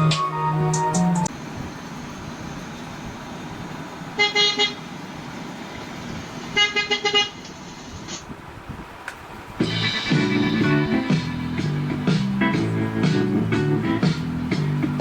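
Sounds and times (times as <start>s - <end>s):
steady background noise: 0.0s - 15.0s
vehicle horn honking: 4.2s - 4.8s, 6.5s - 7.5s.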